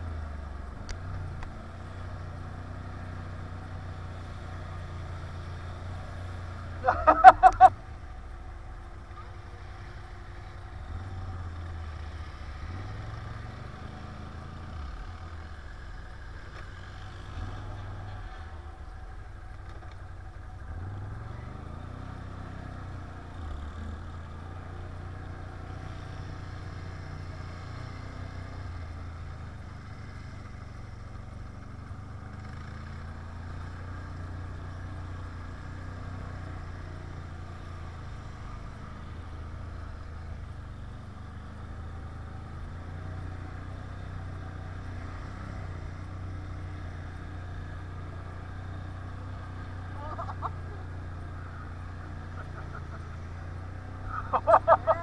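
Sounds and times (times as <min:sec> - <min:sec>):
quad engine revving: 0:20.7 - 0:55.0.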